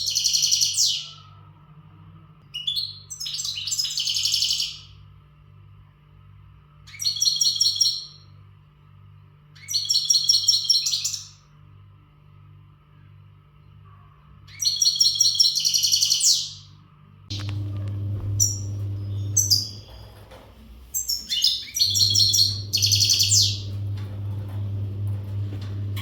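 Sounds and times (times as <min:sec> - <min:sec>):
bird twittering song: 0:00.0 - 0:01.1, 0:02.5 - 0:05.0, 0:06.9 - 0:08.3, 0:09.6 - 0:11.5, 0:14.5 - 0:16.7, 0:17.3 - 0:20.2, 0:20.9 - 0:25.4
faint low hum: 0:16.6 - 0:26.0.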